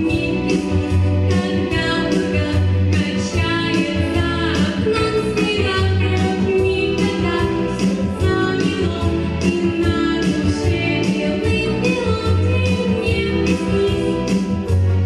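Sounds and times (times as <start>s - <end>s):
pop song with singing: 0.0s - 15.0s.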